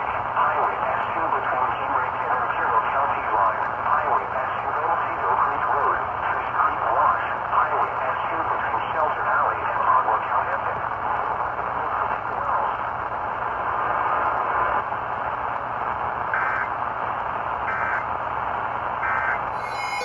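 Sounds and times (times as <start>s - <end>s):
radio reception hiss: 0.1s - 12.8s
digital data squawks: 19.1s - 20.0s.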